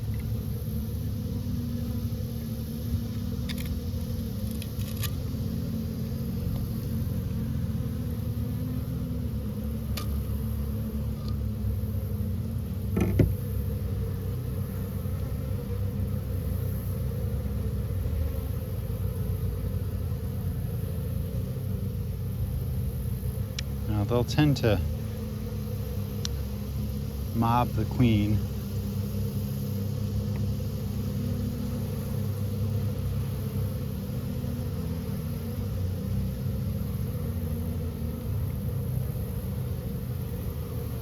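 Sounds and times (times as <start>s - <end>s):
honeybees buzzing: 0.0s - 41.0s
hive frames clicking and knocking: 3.4s - 5.2s, 12.9s - 13.5s.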